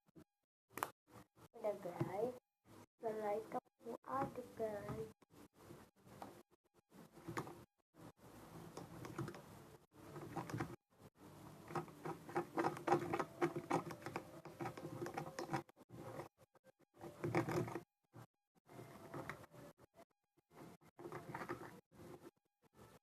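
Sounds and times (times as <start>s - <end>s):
slime stirring squelches: 8.3s - 19.7s.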